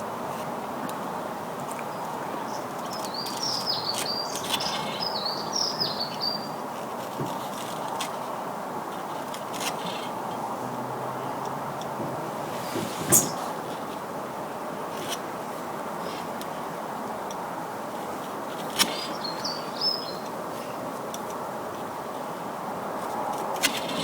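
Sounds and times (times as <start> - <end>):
bird chirping: 2.0 - 6.6, 13.0 - 13.5, 18.9 - 20.3.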